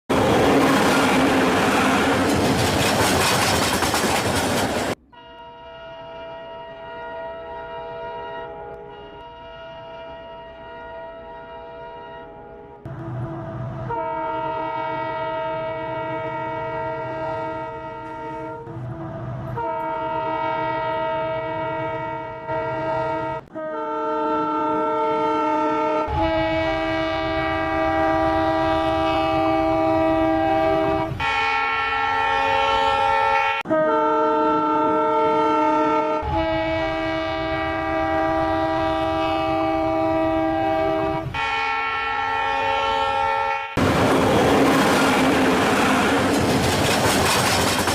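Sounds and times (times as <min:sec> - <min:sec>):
train rumbling: 0:00.1 - 0:05.2, 0:12.4 - 0:23.6, 0:43.8 - 0:47.9
train horn blasts: 0:05.0 - 0:43.8.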